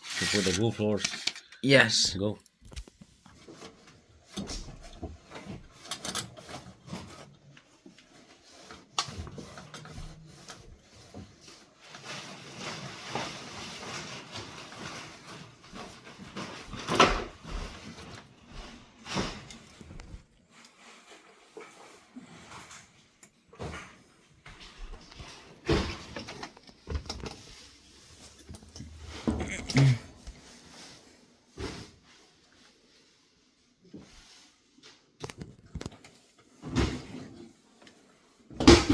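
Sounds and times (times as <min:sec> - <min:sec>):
scraping and rubbing plastic pipe: 0:00.0 - 0:01.5.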